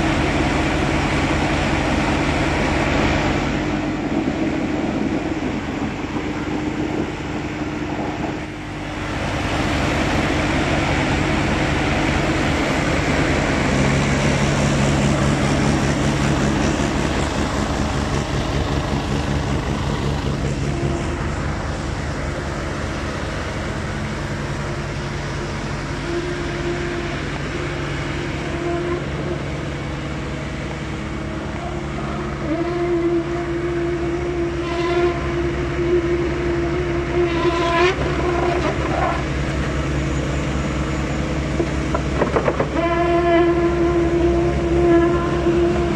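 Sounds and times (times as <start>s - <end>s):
diesel engine running under load: 0.0s - 45.9s.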